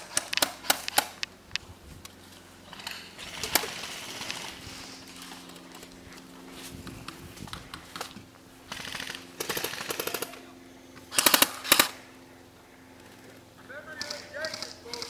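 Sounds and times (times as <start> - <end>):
airsoft guns firing bursts: 0.0 - 1.2, 2.8 - 4.6, 7.6 - 12.1, 13.0 - 15.0.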